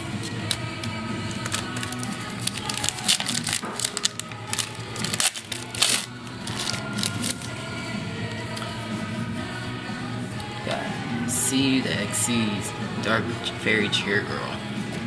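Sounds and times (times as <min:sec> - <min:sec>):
background music: 0:00.0 - 0:15.0
foil wrapper tearing and crinkling: 0:01.3 - 0:07.5.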